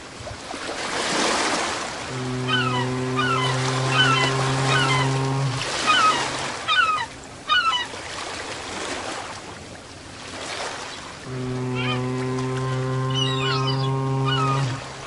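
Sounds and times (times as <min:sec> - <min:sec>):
ocean surf washing: 0:00.0 - 0:15.0
low steady horn: 0:02.1 - 0:05.8, 0:11.2 - 0:15.0
birds squealing: 0:02.5 - 0:05.2, 0:05.8 - 0:07.9, 0:13.1 - 0:14.8.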